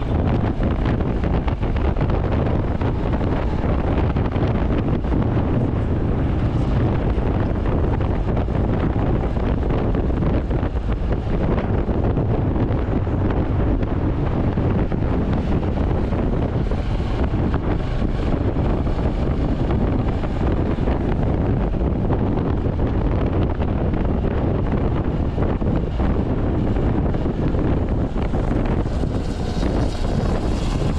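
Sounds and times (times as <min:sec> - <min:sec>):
motorcycle engine cruising: 0:00.0 - 0:30.9
wind buffeting microphone: 0:00.0 - 0:30.9.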